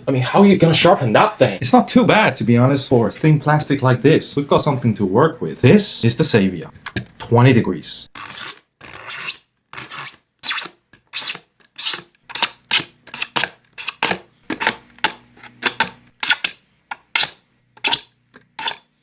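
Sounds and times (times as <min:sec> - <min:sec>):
blade scraping on sharpener: 0:08.1 - 0:18.9.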